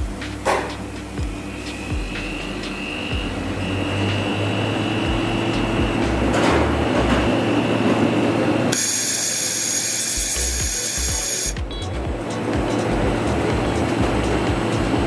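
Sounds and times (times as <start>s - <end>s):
welding machine hum: 7.0s - 11.6s
high-pitched hiss: 8.7s - 11.6s.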